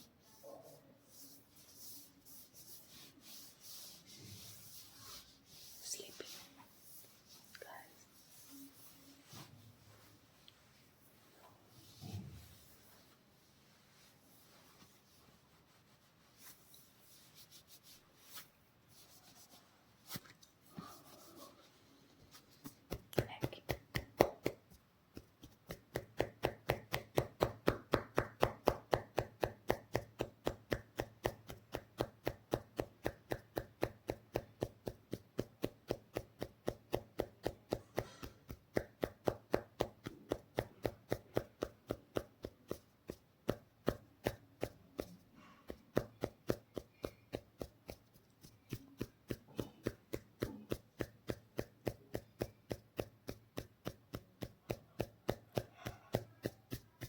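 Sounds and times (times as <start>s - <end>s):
faint rubbing: 0.0s - 23.8s.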